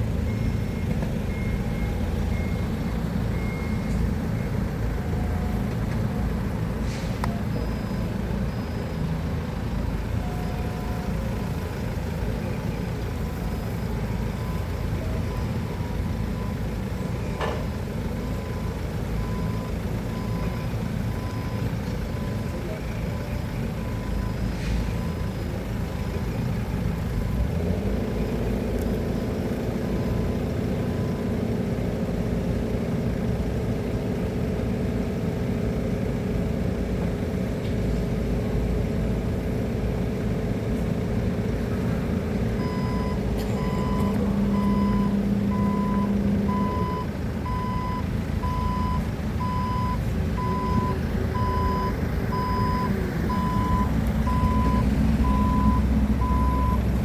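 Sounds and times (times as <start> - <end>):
reversing alarm beeping: 0.0 - 12.2, 13.3 - 26.3, 42.6 - 56.9
forklift engine rumbling: 0.0 - 57.0.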